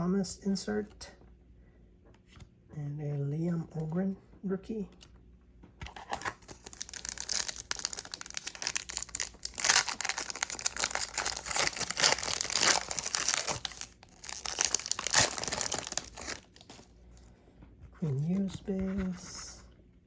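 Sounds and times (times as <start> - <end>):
foil wrapper tearing and crinkling: 5.9 - 16.9.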